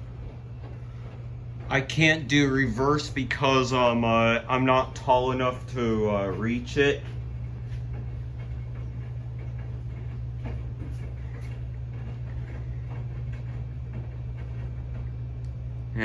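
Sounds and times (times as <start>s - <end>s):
ceiling fan motor hum: 0.0s - 16.0s.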